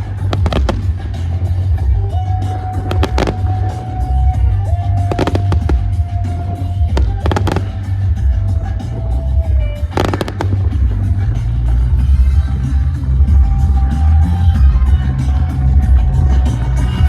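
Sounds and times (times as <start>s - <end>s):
fireworks cracking and banging: 0.0s - 1.4s, 2.7s - 4.0s, 5.0s - 8.4s, 9.8s - 11.4s
loud music with heavy bass: 0.0s - 17.0s.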